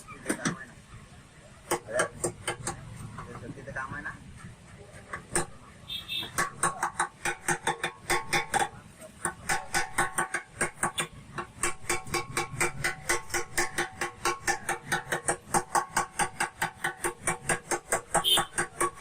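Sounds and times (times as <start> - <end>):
hammer tapping on sheet steel: 1.7 - 3.4, 6.2 - 19.0.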